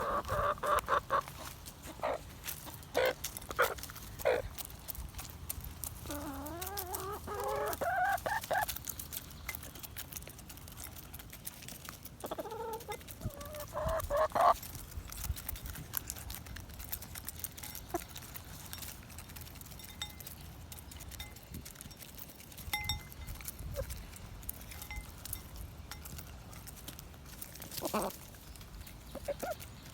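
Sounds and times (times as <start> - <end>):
chicken wavering calls: 0.0 - 4.5, 6.0 - 8.7, 12.2 - 14.6, 29.0 - 29.7
chickens pecking clicks: 0.0 - 29.9.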